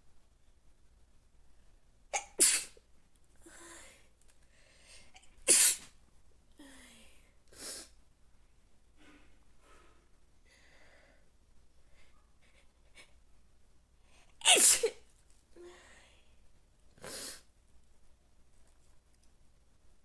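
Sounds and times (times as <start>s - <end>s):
person sneezing: 2.2s - 2.8s, 5.5s - 5.9s, 14.4s - 15.0s.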